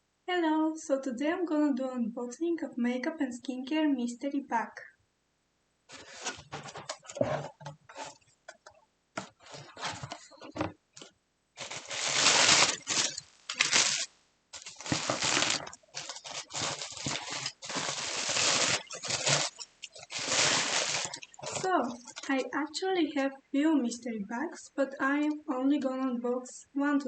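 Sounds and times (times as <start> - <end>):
packaging rustling and crinkling: 5.9 - 8.2, 9.2 - 22.4.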